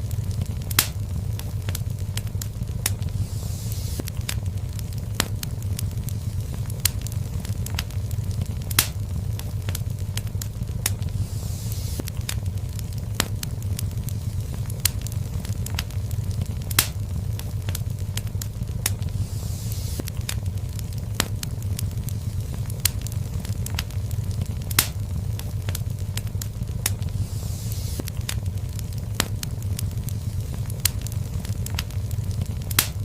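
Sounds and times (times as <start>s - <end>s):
fire crackling and popping: 0.0s - 33.0s
fire rumbling: 0.0s - 33.0s
brief hiss: 3.2s - 4.0s, 11.2s - 12.0s, 19.2s - 20.0s, 27.2s - 28.0s.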